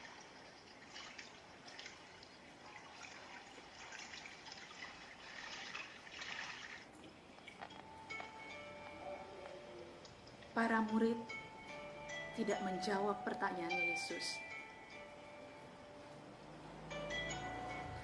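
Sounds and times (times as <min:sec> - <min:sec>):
trickling and dripping water: 0:00.0 - 0:11.4
soft chime-like tones: 0:07.8 - 0:18.0.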